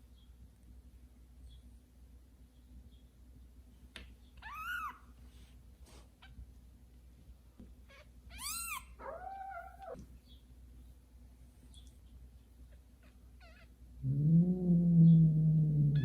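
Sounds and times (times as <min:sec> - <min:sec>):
kitten mewing: 0:08.3 - 0:10.0.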